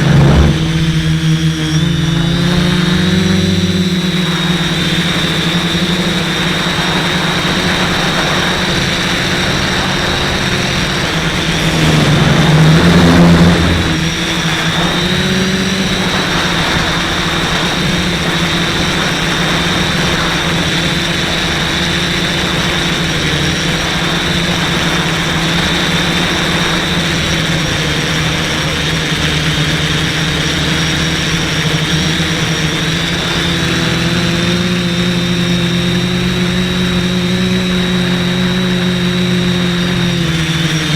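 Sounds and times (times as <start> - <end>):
drone motors and propellers whining: 0.0 - 40.9.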